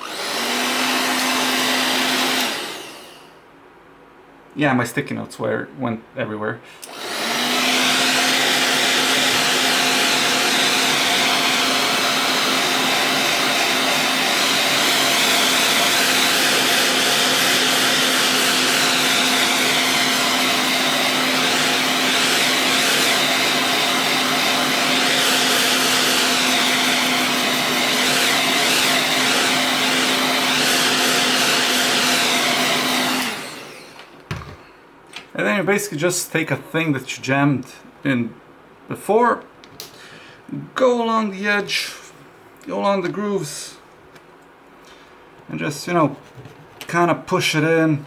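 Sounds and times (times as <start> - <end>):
heat gun fan humming: 0.0 - 3.4, 6.8 - 35.2.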